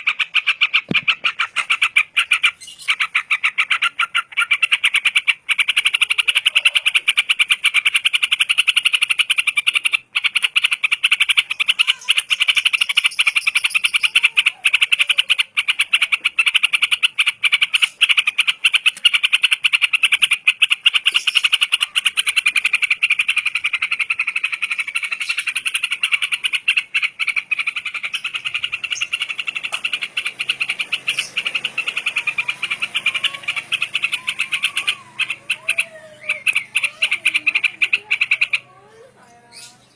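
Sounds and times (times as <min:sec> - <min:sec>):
fast pulsing trill: 0:16.5 - 0:38.6.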